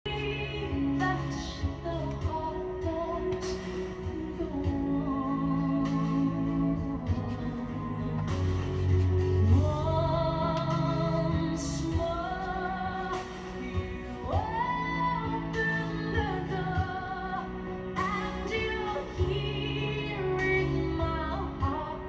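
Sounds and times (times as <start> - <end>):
low musical accompaniment: 0.0 - 22.0
person singing with vibrato: 0.1 - 22.0.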